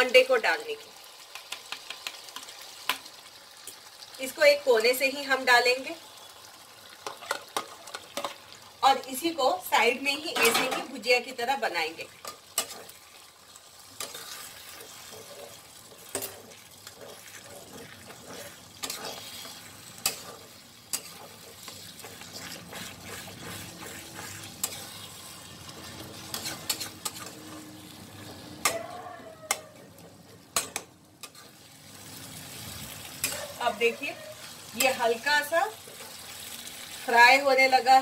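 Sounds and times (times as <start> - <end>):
egg sizzling in a pan: 0.0 - 38.0
spatula clicking against pan: 1.3 - 3.0
spatula scraping pan: 12.1 - 31.7, 32.5 - 37.0.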